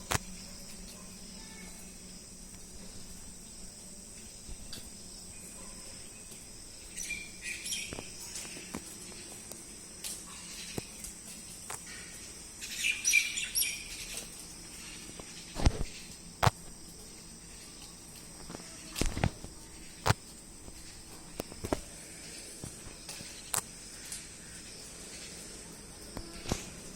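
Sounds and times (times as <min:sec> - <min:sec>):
high insect drone: 0:00.0 - 0:26.9
bird chirps: 0:06.9 - 0:08.6, 0:12.6 - 0:14.3.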